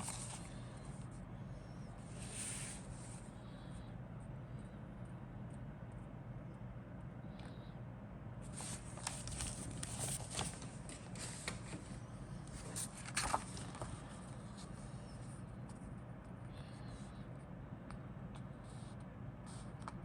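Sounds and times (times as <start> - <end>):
low steady hum: 0.0 - 20.0
packaging rustling: 8.6 - 11.8.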